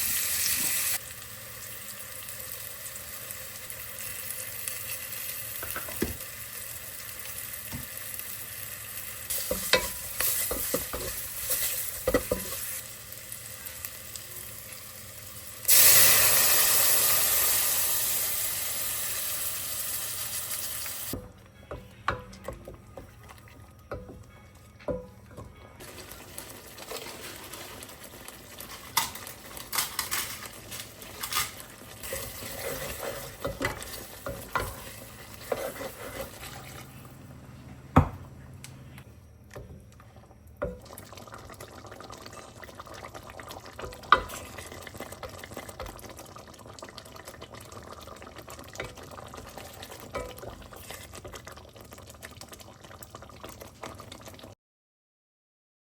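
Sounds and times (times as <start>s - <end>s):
food bubbling and sizzling: 0.0s - 21.2s, 21.8s - 24.6s, 25.2s - 37.4s, 39.5s - 54.6s
spoon stirring curry: 32.0s - 37.0s.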